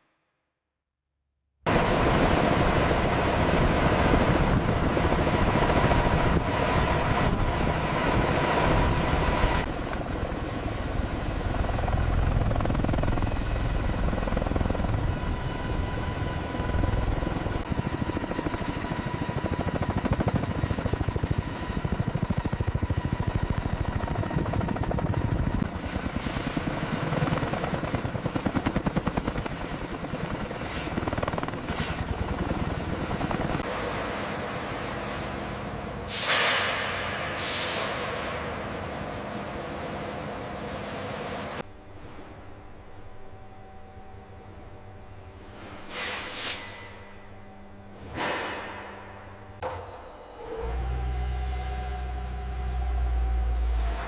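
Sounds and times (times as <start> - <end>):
heavy engine pulsing: 49.6 - 54.0.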